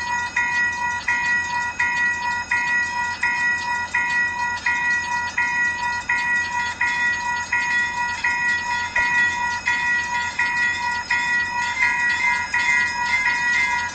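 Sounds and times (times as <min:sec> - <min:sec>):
railroad crossing bell ringing: 0:00.0 - 0:13.9.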